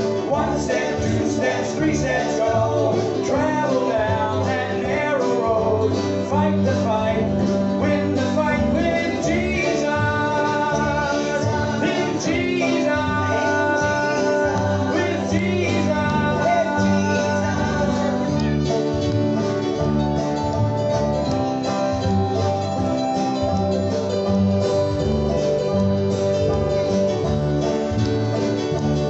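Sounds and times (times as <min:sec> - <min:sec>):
person singing: 0:00.0 - 0:19.1
acoustic guitar: 0:00.0 - 0:29.0
country gospel band playing: 0:00.0 - 0:29.0.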